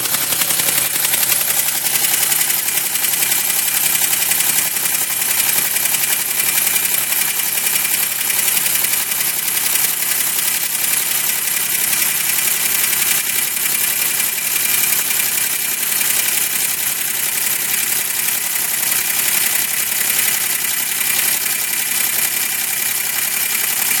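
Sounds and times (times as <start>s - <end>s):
car engine idling with knock: 0.0s - 24.0s.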